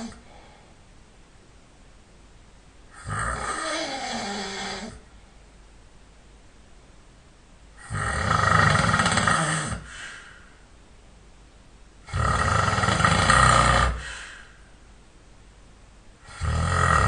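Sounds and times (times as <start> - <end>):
man snoring: 0.0 - 0.2, 2.9 - 5.0, 7.8 - 10.0, 12.1 - 14.3, 16.2 - 17.0.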